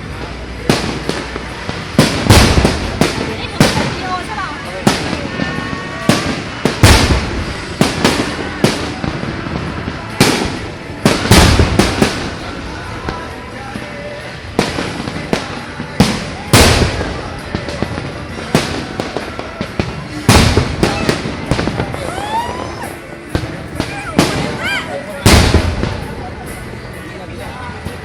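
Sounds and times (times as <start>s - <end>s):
fireworks banging: 0.0s - 28.0s.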